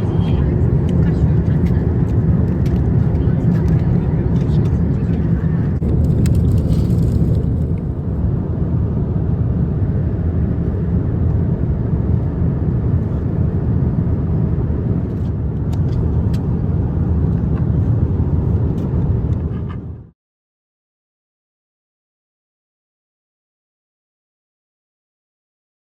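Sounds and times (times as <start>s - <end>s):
moving vehicle rumble: 0.0s - 20.2s.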